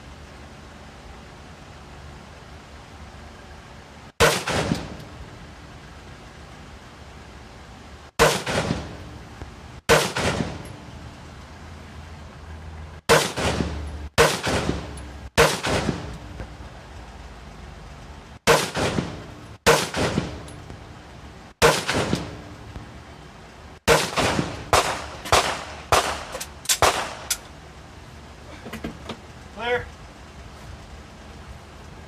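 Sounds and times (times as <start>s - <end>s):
gunshots with ringing tail: 4.2s - 5.0s, 8.2s - 9.0s, 9.9s - 10.8s, 13.1s - 16.2s, 18.4s - 20.5s, 21.6s - 22.5s, 23.9s - 27.4s.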